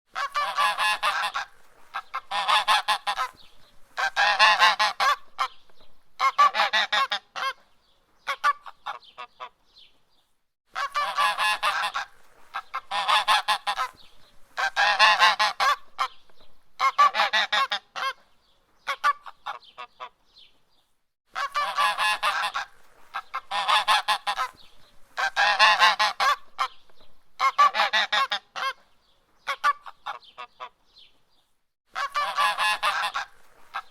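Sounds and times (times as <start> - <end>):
goose honking: 0.1 - 3.4, 4.0 - 5.6, 10.7 - 14.0, 14.6 - 16.1, 21.4 - 24.6, 25.2 - 26.8, 27.4 - 28.8, 32.0 - 33.9.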